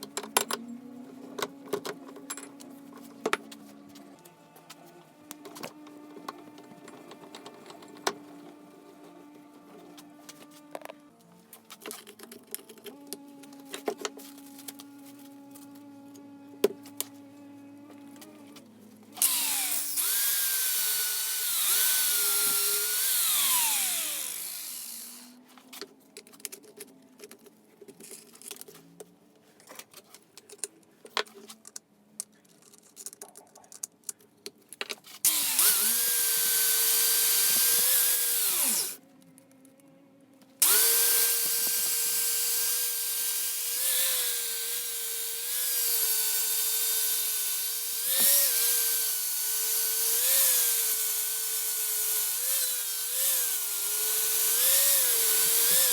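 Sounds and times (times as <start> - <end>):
handling clicks and scrapes: 0.0 - 16.2
power tool whining: 19.2 - 25.4, 35.3 - 39.0, 40.6 - 55.9.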